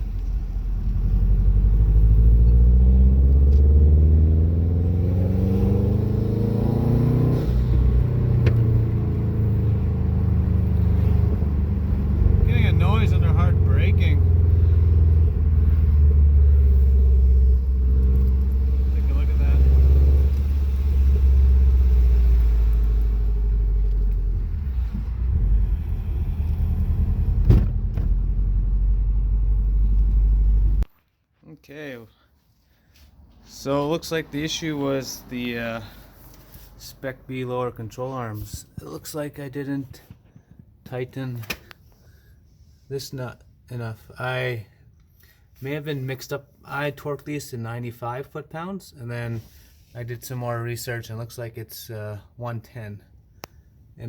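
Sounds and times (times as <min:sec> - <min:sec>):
car engine running: 0:07.5 - 0:30.8.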